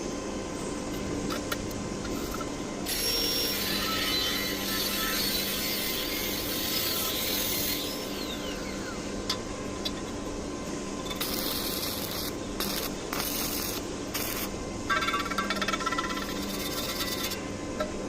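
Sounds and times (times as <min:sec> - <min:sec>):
metalworking hiss: 0:02.1 - 0:08.9, 0:11.1 - 0:15.3.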